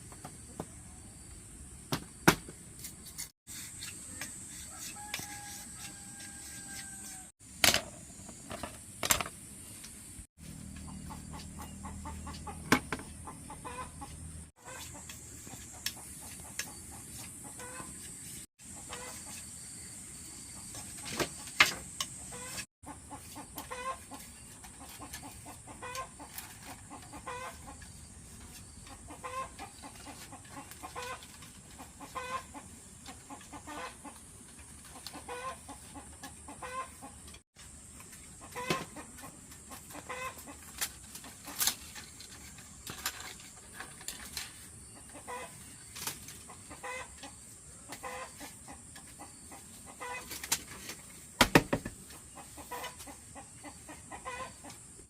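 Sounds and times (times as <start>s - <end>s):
chickens clucking: 10.6s - 18.0s, 18.7s - 19.4s, 20.5s - 37.4s, 38.3s - 41.9s, 44.2s - 51.1s, 52.0s - 54.9s
sharp knocks: 51.4s - 52.0s.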